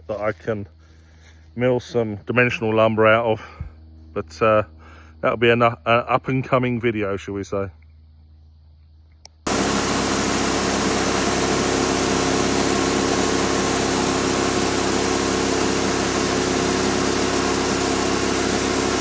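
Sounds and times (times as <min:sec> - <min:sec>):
saw hissing through log: 0:09.5 - 0:19.0
sawmill engine drone: 0:09.5 - 0:19.0.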